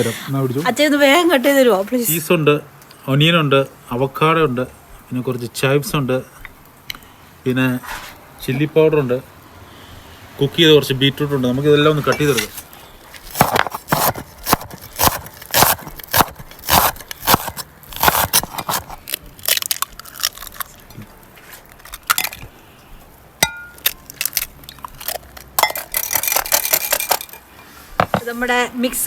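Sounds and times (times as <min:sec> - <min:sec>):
knife chopping on cutting board: 0:13.3 - 0:19.0, 0:28.0 - 0:28.3
ringing metal clink: 0:22.8 - 0:24.0.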